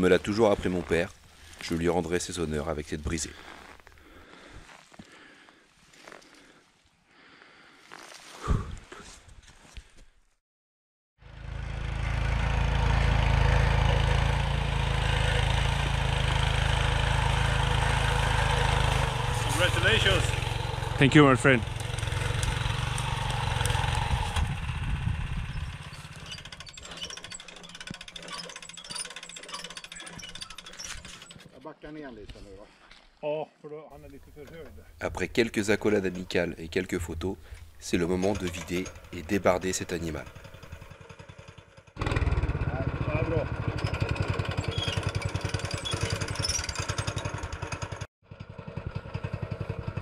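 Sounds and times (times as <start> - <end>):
small engine running: 11.2 - 31.6, 38.1 - 50.0.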